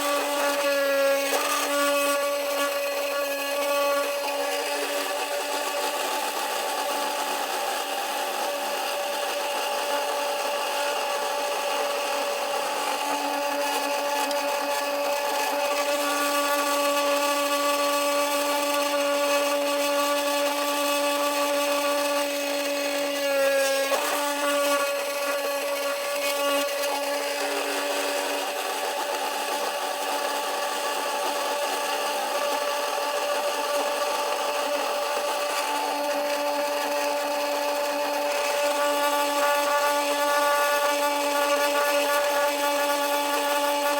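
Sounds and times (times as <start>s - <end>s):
spindle motor whining: 10.2s - 30.2s.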